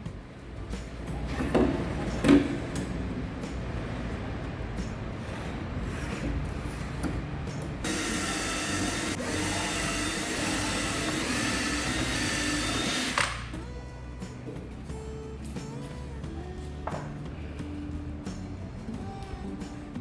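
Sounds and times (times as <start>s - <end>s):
power tool motor running: 7.8s - 13.5s.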